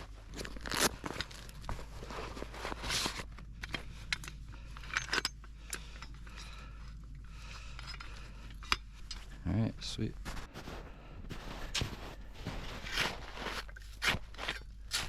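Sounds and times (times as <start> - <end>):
snow crunching: 9.8 - 15.0.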